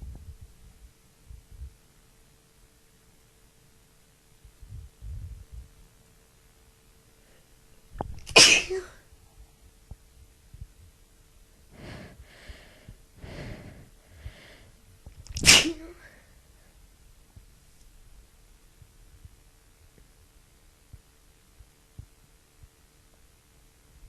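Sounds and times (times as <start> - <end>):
woman sneezing: 8.3 - 9.0, 15.4 - 16.2
breathy breaths: 11.6 - 14.8.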